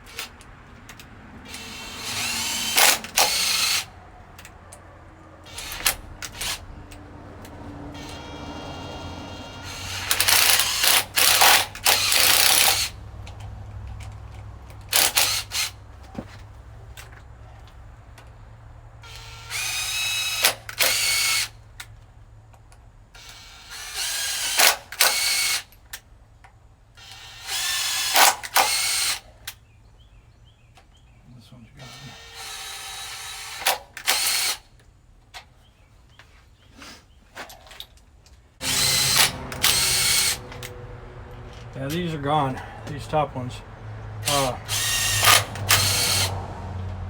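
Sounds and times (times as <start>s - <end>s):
cordless drill whining: 1.4s - 3.9s, 5.4s - 7.0s, 7.9s - 13.0s, 14.9s - 15.8s, 19.0s - 21.5s, 23.2s - 25.7s, 27.0s - 29.3s, 31.8s - 34.6s, 38.6s - 40.8s, 44.2s - 46.5s.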